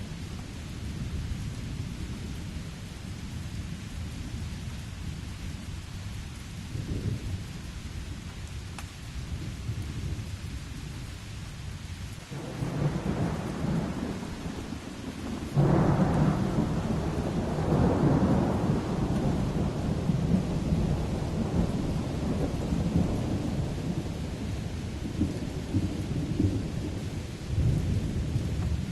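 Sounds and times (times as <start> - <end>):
rain falling steadily: 0.0 - 28.9
rolling thunder: 12.3 - 28.9.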